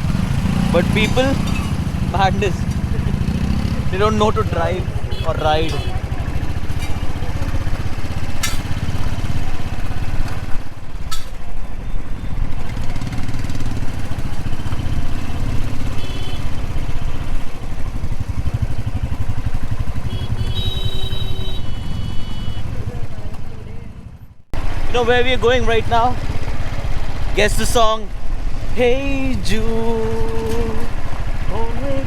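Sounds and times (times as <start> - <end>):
motorcycle engine running: 0.0 - 32.0.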